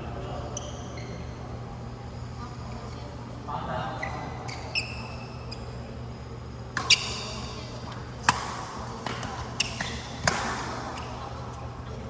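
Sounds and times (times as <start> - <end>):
shoe squeak: 0.5 - 1.4, 4.0 - 5.8, 6.8 - 7.7, 9.5 - 10.2
racket hitting shuttlecock: 6.8 - 11.2.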